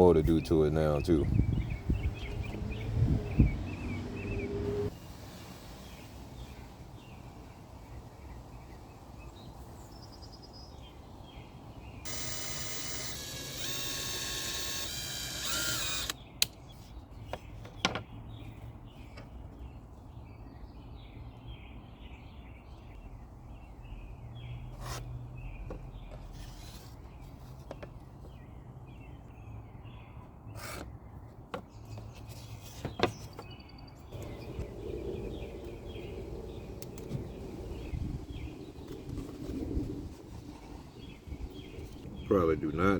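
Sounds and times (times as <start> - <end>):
birds chirping faintly: 5.8 - 24.8, 25.4 - 42.9
power tool running: 12.1 - 16.2
sharp clicks: 12.1 - 16.6.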